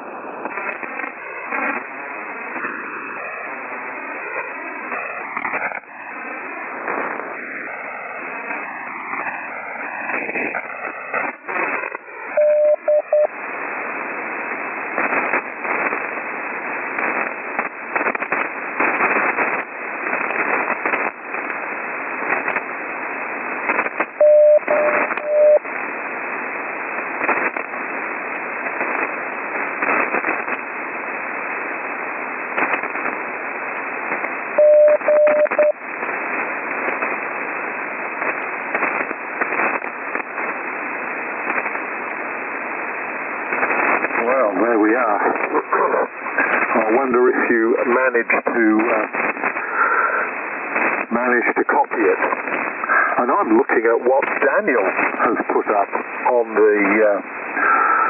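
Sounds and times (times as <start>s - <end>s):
radio static with crashes: 0.0s - 58.0s
morse code tone: 12.4s - 13.3s, 24.2s - 25.6s, 34.6s - 35.8s.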